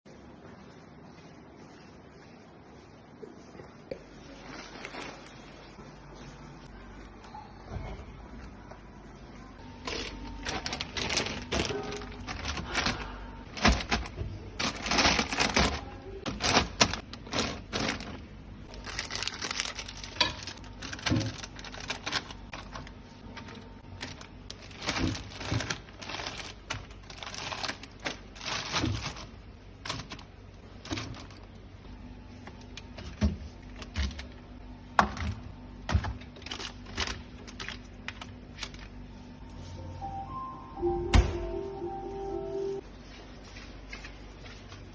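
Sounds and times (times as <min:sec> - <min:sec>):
objects clattering: 0:09.7 - 0:31.4.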